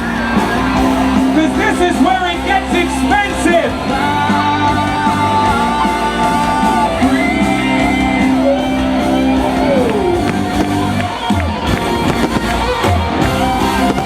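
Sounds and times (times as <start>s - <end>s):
electric guitar with held notes: 0.0s - 14.0s
live rock band playing: 0.0s - 14.0s.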